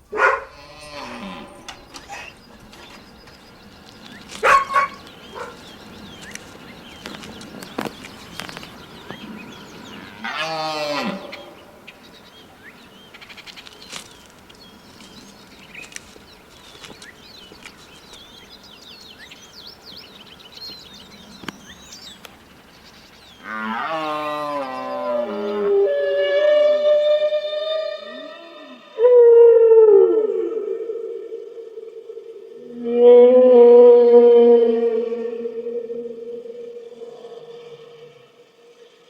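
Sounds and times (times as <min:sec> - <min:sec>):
loud drawn-out animal call: 0:00.1 - 0:02.4, 0:09.8 - 0:11.7, 0:23.4 - 0:39.0
cow mooing: 0:00.3 - 0:02.0, 0:09.9 - 0:11.5, 0:23.4 - 0:26.7.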